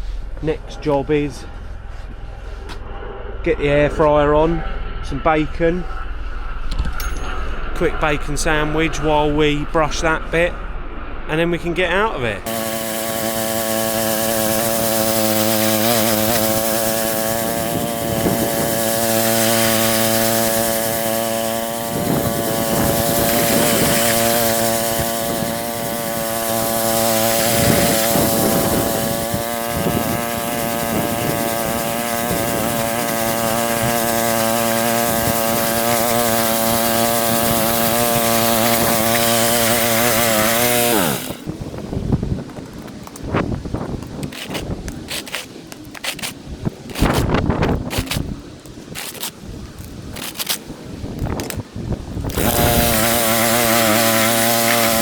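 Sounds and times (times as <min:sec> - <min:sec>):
petrol engine running: 0:12.4 - 0:41.5, 0:52.3 - 0:55.0
wire brush scraping paving: 0:12.5 - 0:41.6, 0:42.5 - 0:51.6.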